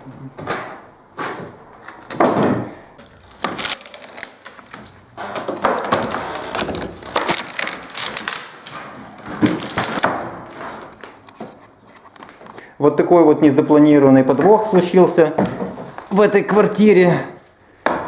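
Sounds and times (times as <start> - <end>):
wooden floorboards creaking: 0.3 - 12.6, 14.3 - 16.9.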